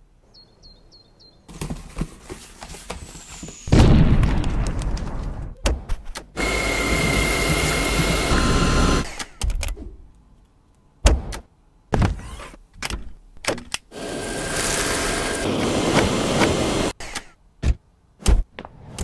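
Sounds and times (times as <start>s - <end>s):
vacuum cleaner motor whine: 6.4s - 9.1s, 14.0s - 16.9s.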